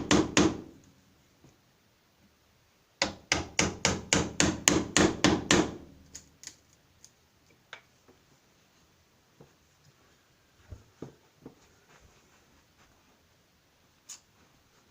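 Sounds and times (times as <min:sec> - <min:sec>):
hammer striking wood chisel: 0:00.0 - 0:00.7, 0:03.0 - 0:05.8.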